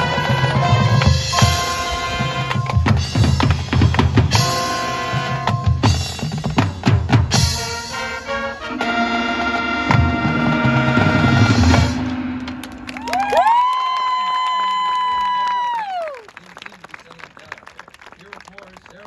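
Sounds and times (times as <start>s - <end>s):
bass and snare drums: 0.0s - 12.9s
brass chords: 0.0s - 12.9s.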